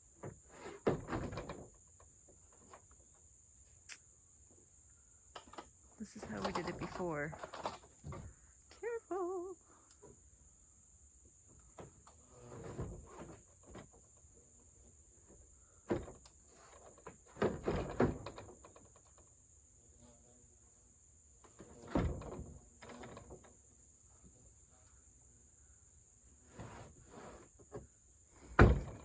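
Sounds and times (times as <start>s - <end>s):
plastic panels knocking and clattering: 0.2s - 1.8s.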